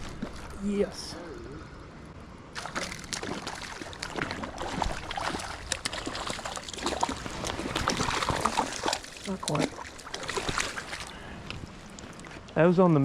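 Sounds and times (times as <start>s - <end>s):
water splashing: 2.5s - 12.4s.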